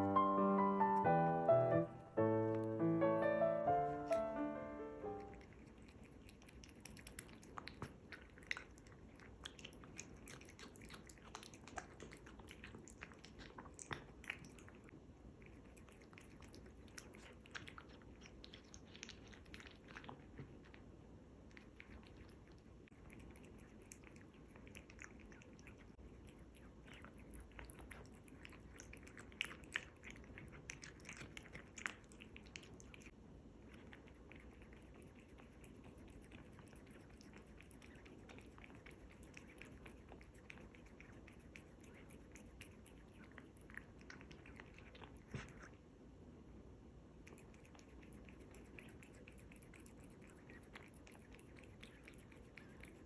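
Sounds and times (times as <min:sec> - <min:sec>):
cat chewing wetly: 0:03.8 - 0:53.0.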